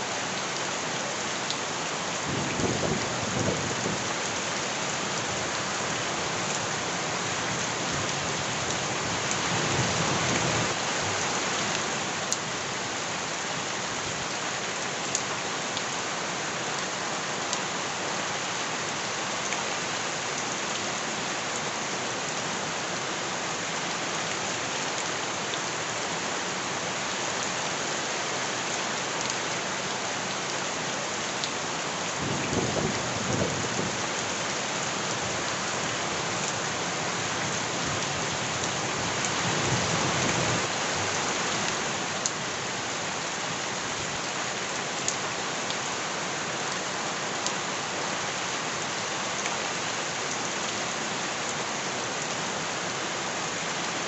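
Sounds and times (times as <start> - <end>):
heavy rain hissing: 0.0 - 14.6.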